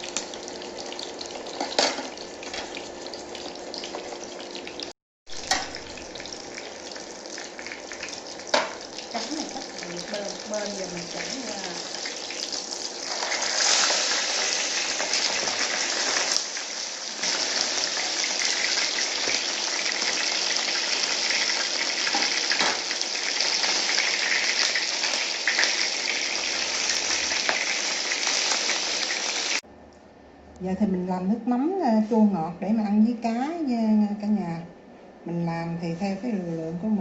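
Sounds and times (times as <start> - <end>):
fish sizzling in hot oil: 0.0 - 29.6
oil popping and crackling: 0.0 - 29.6.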